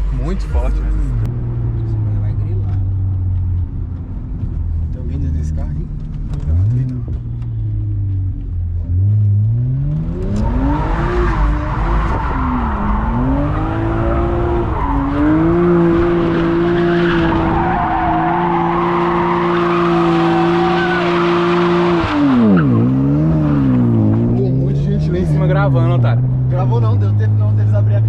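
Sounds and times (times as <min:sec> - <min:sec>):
car engine revving hard: 0:08.9 - 0:28.0.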